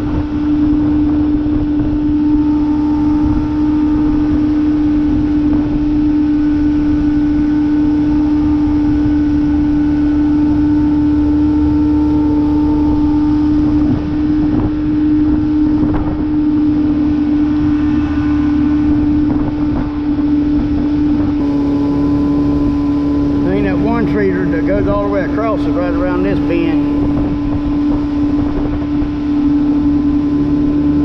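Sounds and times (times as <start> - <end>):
outboard motor running: 0.0 - 31.0
wind on microphone: 0.0 - 31.0.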